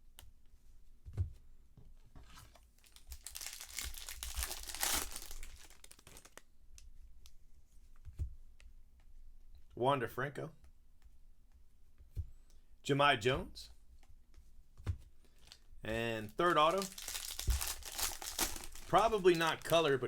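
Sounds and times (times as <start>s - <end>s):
foil wrapper tearing and crinkling: 2.8s - 6.4s, 15.4s - 15.6s, 16.2s - 20.0s.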